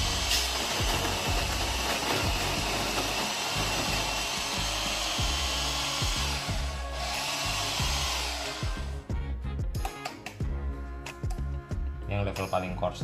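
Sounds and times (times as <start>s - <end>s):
electric coffee grinder grinding: 0.0s - 9.0s
background music: 0.0s - 13.0s.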